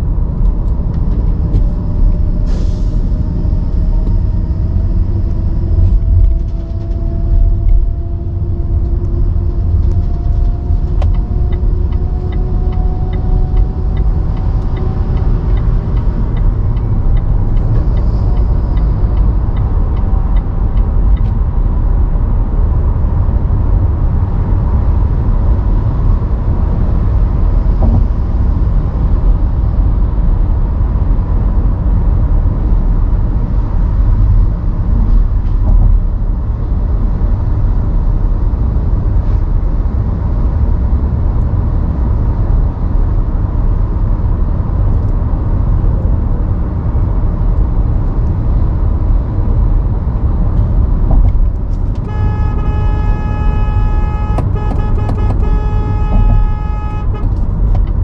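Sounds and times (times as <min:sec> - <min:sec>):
car driving on city roads: 0:00.0 - 0:58.0
traffic noise: 0:00.0 - 0:58.0
vehicle horn held: 0:51.8 - 0:57.8.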